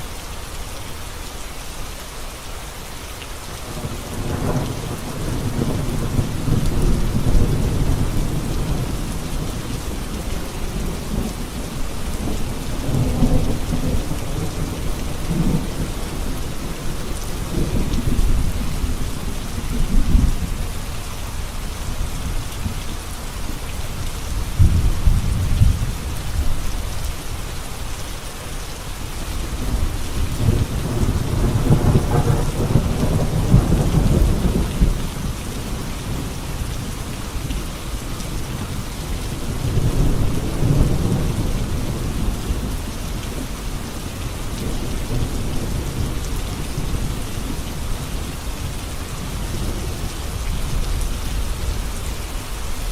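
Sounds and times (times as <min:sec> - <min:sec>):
heavy rain on road: 0:00.0 - 0:52.9
thunder rumbling: 0:24.3 - 0:26.9, 0:29.5 - 0:36.9, 0:39.5 - 0:42.7.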